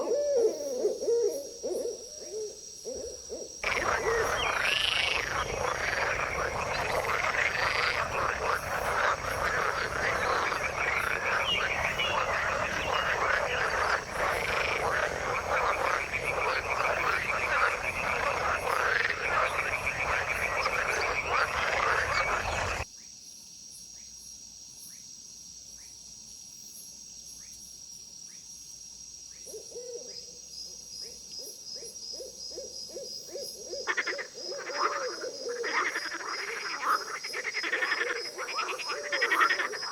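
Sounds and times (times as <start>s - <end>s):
low croak: 3.2s - 22.9s, 33.8s - 39.9s
chorus of frogs calling: 3.4s - 22.9s, 33.8s - 39.9s
clicking calls: 3.6s - 22.8s.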